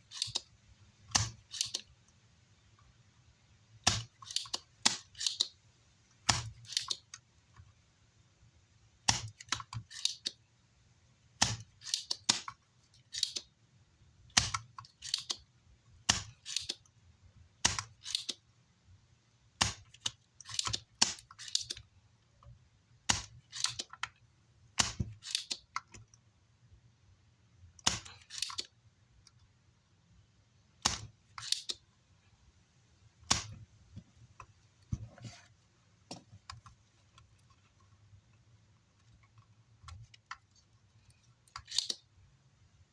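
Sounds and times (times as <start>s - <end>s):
desoldering pump snapping: 30.8s - 31.8s, 33.3s - 33.6s.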